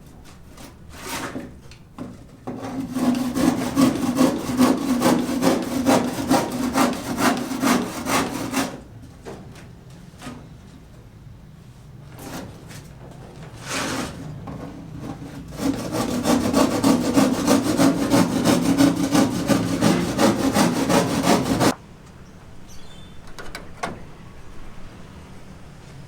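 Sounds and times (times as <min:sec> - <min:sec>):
saw cutting wood: 0:02.5 - 0:08.8, 0:13.6 - 0:14.3, 0:15.0 - 0:21.8.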